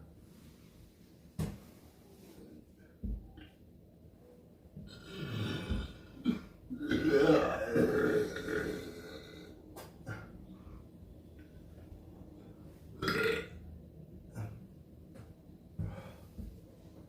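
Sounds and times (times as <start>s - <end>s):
person burping: 4.9s - 9.5s, 13.0s - 13.6s.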